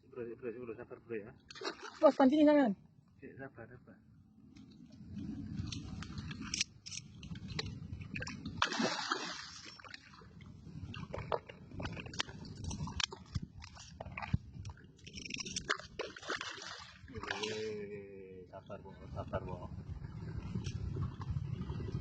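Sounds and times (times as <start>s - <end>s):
fish thrashing in water: 1.5s - 2.1s, 8.2s - 17.6s.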